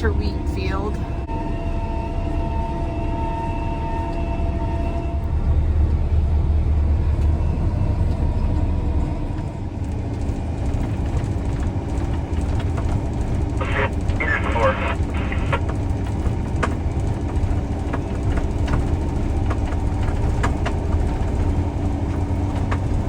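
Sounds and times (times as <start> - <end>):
combine harvester engine rumbling: 0.0 - 23.0
faint steady whine: 13.5 - 15.8.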